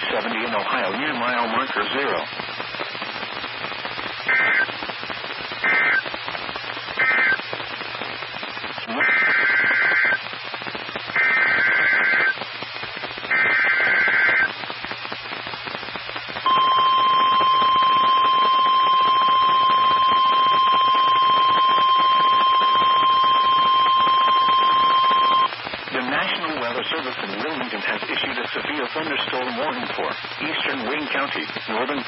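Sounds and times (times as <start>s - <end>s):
digital data bursts: 0.0s - 15.5s, 16.4s - 32.0s
radio hiss: 0.0s - 32.0s
steady warning alarm tone: 16.5s - 25.5s.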